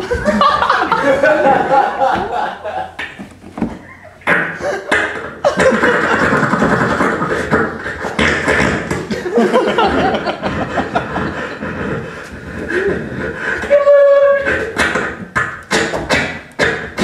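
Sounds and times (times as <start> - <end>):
person making sputtering mouth noises: 3.9 - 9.2, 10.4 - 17.0.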